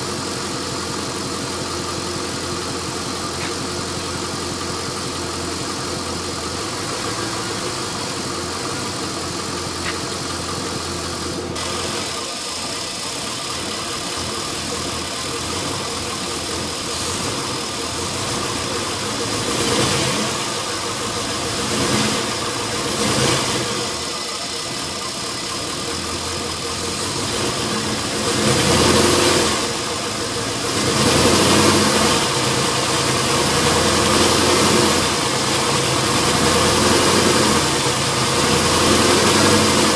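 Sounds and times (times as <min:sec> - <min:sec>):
engine idling roughly: 0:00.0 - 0:39.9.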